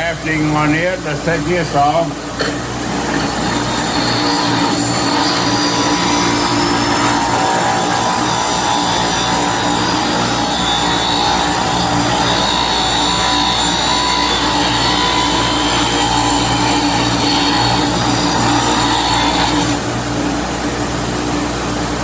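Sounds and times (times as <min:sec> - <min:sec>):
grinder motor hum: 0:02.3 - 0:20.4
metal grinding on grinder wheel: 0:02.4 - 0:19.9.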